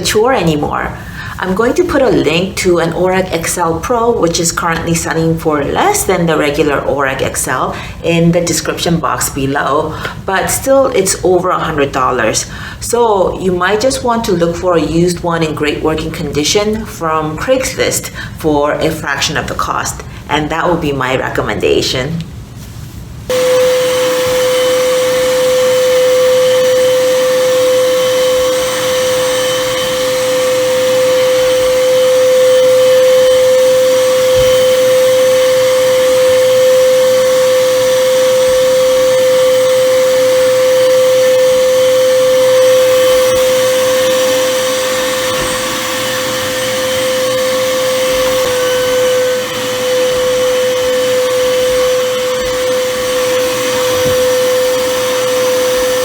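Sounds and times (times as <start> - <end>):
vacuum cleaner motor running: 23.3 - 56.0.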